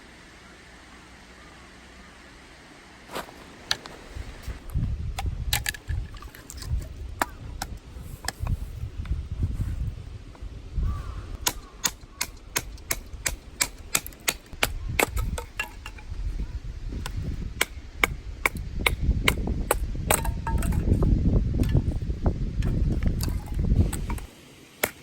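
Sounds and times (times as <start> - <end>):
sharp irregular clicks and knocks: 11.4 - 16.1.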